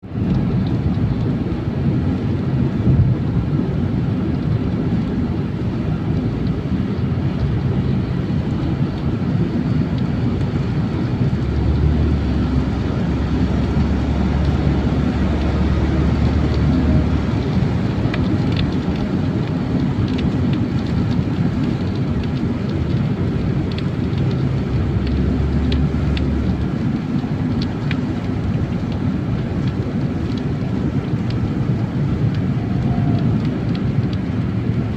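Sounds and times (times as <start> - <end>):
car cabin road rumble: 0.0 - 34.9
light ticks: 18.1 - 23.0, 23.6 - 24.4, 25.0 - 26.8, 29.6 - 30.5.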